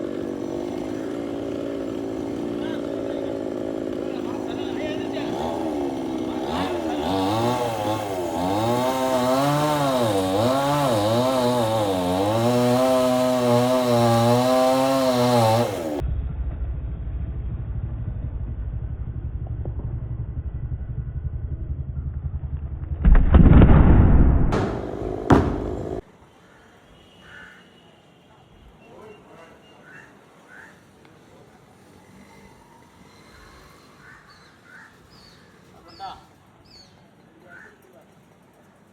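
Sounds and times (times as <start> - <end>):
chainsaw running and revving: 0.0 - 16.0, 24.6 - 26.0.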